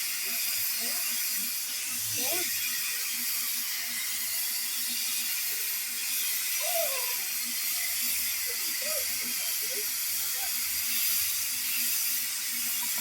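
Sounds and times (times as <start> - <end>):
steam hissing: 0.0 - 13.0
faint voices of people: 8.3 - 10.6.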